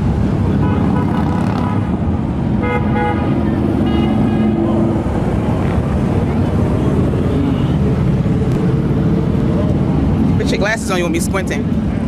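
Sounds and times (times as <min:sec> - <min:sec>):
motorcycle and street traffic rumble: 0:00.0 - 0:12.0
vehicle horns tooting: 0:00.6 - 0:01.9, 0:02.6 - 0:04.7.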